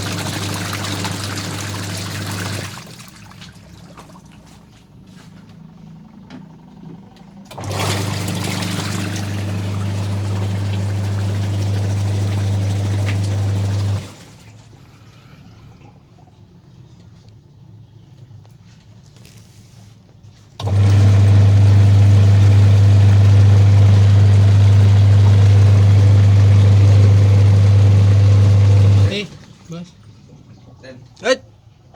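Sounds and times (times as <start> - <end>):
water churning in tub: 0.0 - 4.9, 7.5 - 14.8, 20.6 - 31.9
washing machine motor humming: 0.0 - 14.7, 20.6 - 30.1.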